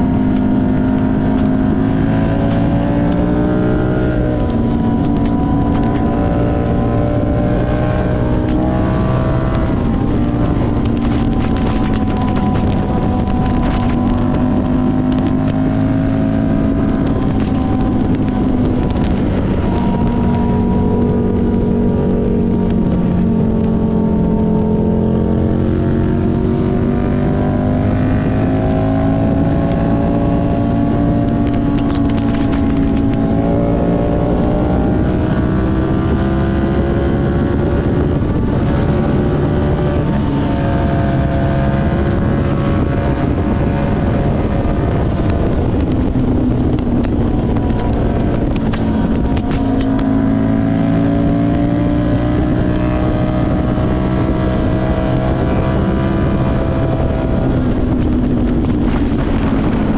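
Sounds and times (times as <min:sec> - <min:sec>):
low wind rumble: 0:00.0 - 0:59.9
motorcycle engine running: 0:00.0 - 0:59.9.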